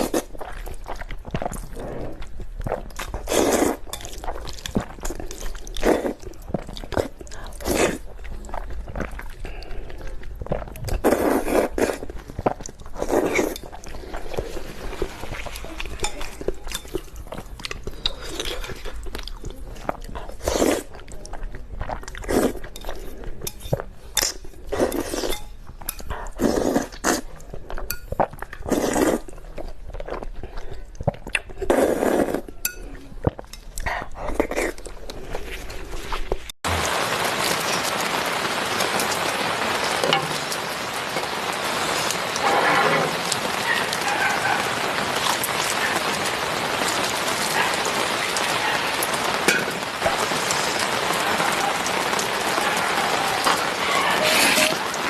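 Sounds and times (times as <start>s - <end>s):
chewing and mouth noises: 0.0s - 36.8s.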